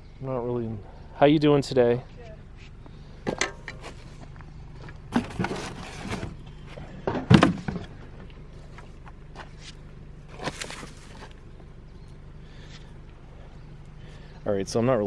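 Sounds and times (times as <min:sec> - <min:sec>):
steady low hum: 0:00.0 - 0:15.0
junk clattering and knocking: 0:03.2 - 0:04.0, 0:04.8 - 0:08.4.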